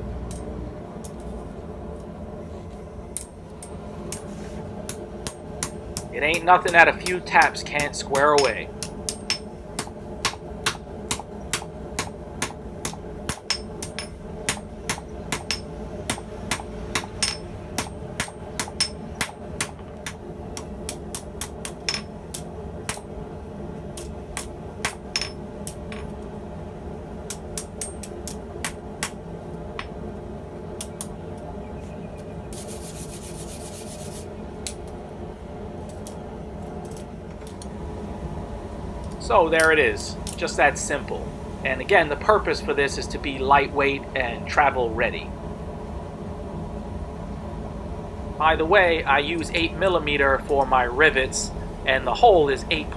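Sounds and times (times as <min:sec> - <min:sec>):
steady low hum: 0:00.0 - 0:52.9
hammer tapping steel on anvil: 0:00.2 - 0:01.4, 0:03.2 - 0:23.1, 0:24.0 - 0:26.2, 0:27.3 - 0:30.0.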